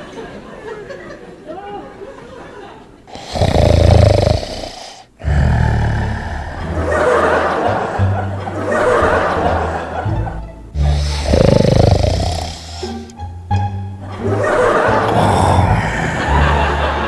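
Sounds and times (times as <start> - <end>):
loud exaggerated snoring: 3.1 - 10.2, 10.8 - 13.1, 14.3 - 17.0
comedic background music: 5.6 - 17.0.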